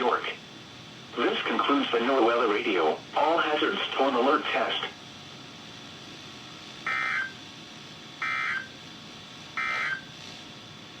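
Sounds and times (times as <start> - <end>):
radio hiss: 0.0 - 5.7, 6.6 - 7.4.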